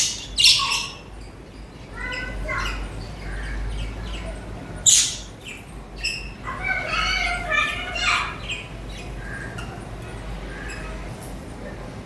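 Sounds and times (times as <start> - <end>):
loud sharp bird squawk: 0.0 - 1.1, 4.8 - 5.4
budgerigars chattering and chirping: 0.0 - 11.0.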